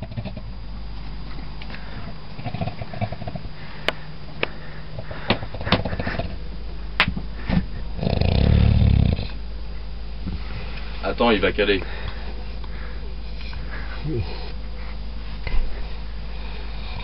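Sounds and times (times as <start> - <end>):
man snoring: 7.9 - 9.4.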